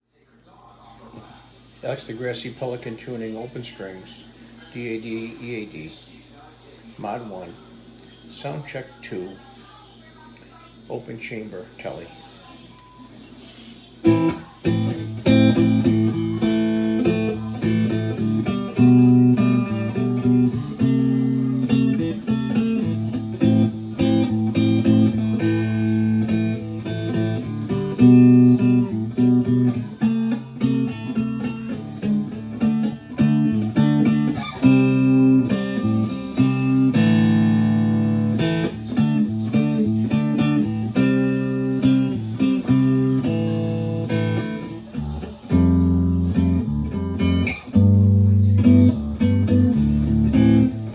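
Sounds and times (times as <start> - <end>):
electric guitar picked notes and chords: 14.0 - 50.9.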